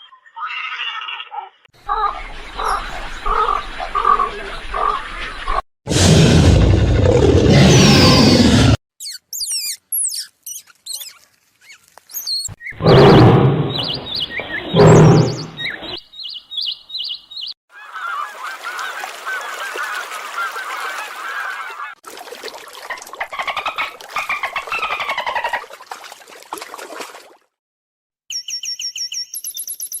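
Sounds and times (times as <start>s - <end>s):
rapid repeated chirps: 9.0s - 11.2s
high quick bird chirps: 9.0s - 17.6s
loud rough animal call: 12.8s - 13.9s.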